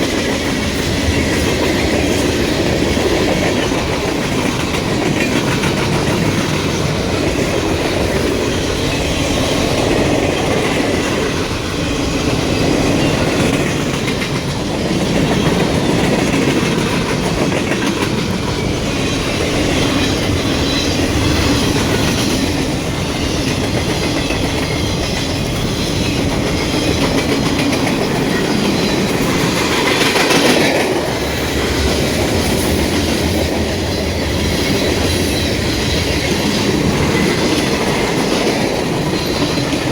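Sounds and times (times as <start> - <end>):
freight train rumbling past: 0.0 - 39.9.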